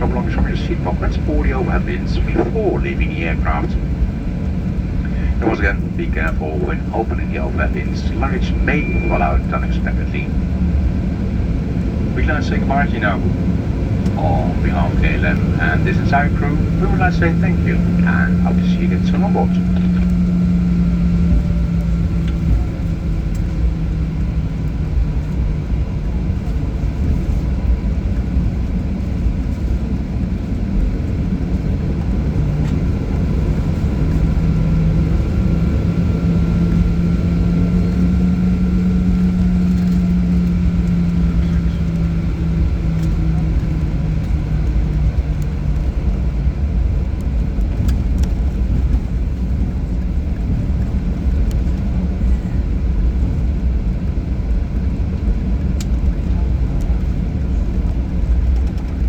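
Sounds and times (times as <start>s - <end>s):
jet engines low rumble: 0.0s - 59.0s.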